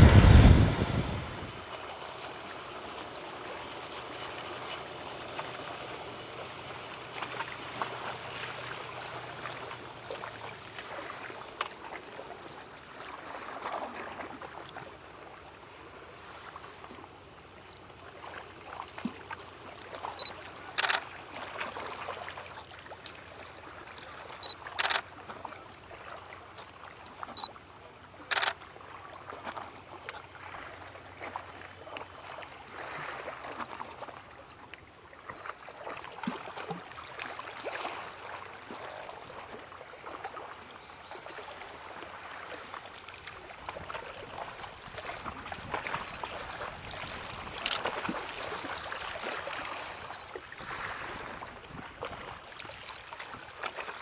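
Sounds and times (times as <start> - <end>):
outdoor background noise: 0.0 - 54.0
camera shutter: 20.8 - 21.0, 24.7 - 25.0, 28.3 - 28.6, 47.6 - 47.8.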